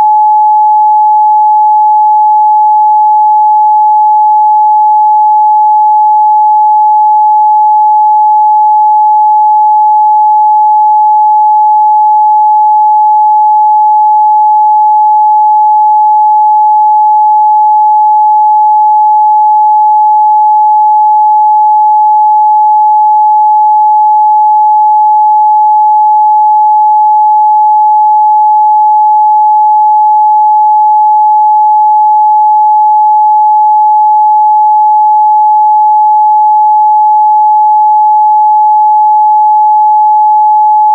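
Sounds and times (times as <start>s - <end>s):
sine wave test tone: 0.0s - 40.9s.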